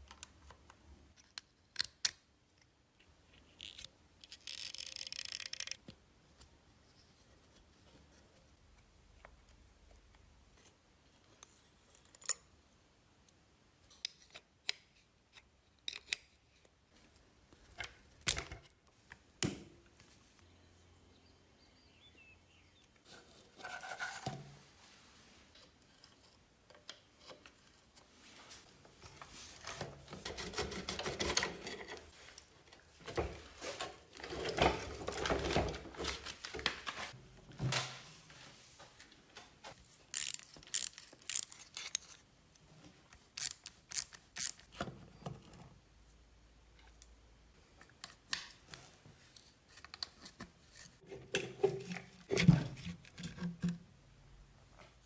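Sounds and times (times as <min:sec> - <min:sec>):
scraping and rubbing: 0:23.1 - 0:26.5.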